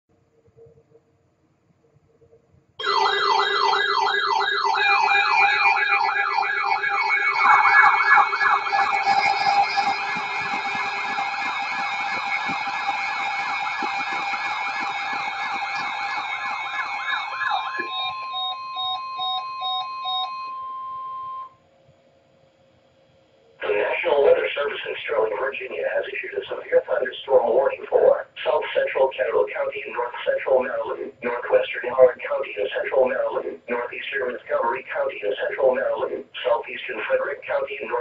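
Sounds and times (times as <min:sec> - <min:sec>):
pulsing beep: 0:02.8 - 0:21.5
wailing electronic siren: 0:02.8 - 0:21.5
steady alarm tones: 0:02.8 - 0:21.6, 0:23.6 - 0:38.0.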